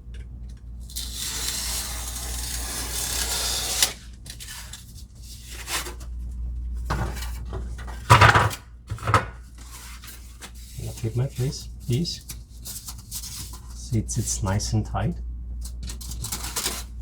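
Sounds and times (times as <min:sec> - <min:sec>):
knife scraping through polystyrene: 0:01.0 - 0:06.1, 0:09.5 - 0:14.3.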